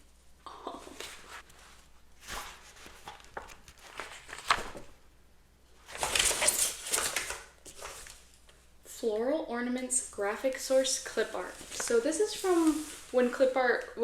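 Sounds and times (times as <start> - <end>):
paper rustling: 0.9 - 5.0, 5.8 - 8.3, 10.7 - 14.0.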